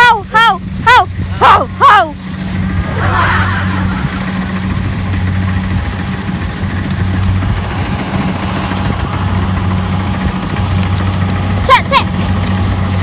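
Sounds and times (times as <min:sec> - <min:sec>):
engine idling: 0:00.0 - 0:13.0.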